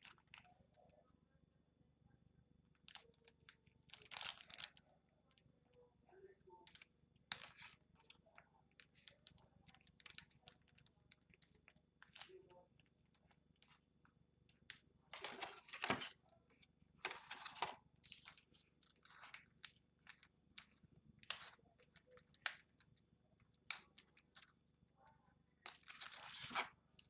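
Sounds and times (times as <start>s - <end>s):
packaging crinkling: 3.9s - 4.8s.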